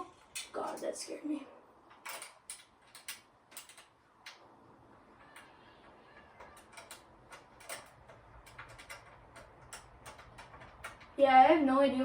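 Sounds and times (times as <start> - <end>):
small metal hardware clicks: 0.1 - 1.0, 1.9 - 4.4, 5.3 - 11.2.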